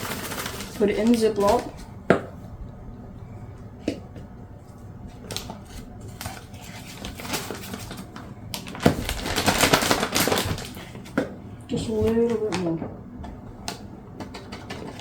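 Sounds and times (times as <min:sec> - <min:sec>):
plastic bag crinkling: 0:00.0 - 0:01.8, 0:05.3 - 0:11.0.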